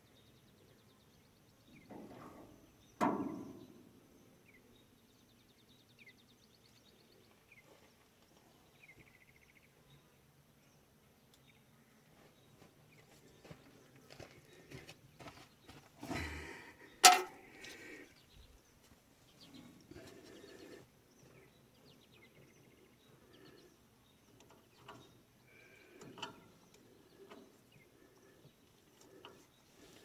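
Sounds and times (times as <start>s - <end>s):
tools and parts clicking: 17.0s - 17.4s.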